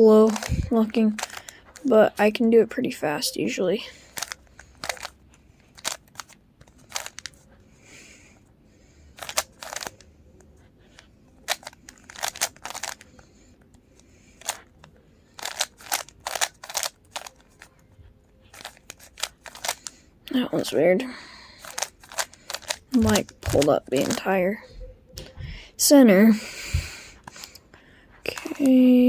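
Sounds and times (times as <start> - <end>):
puzzle cube layers clicking: 0.2 - 1.6, 4.1 - 7.4, 9.2 - 10.1, 10.9 - 13.2, 14.4 - 17.8, 18.5 - 19.9, 21.6 - 24.4.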